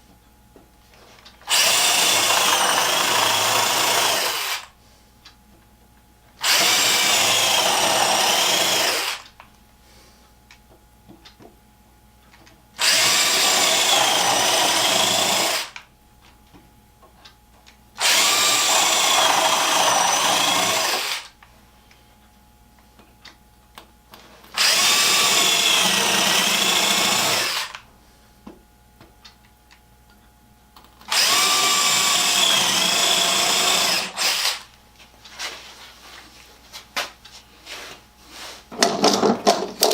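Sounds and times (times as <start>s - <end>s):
power drill running: 1.5s - 4.7s, 6.4s - 9.3s, 12.8s - 15.8s, 18.0s - 21.4s, 24.6s - 27.8s, 31.1s - 34.7s.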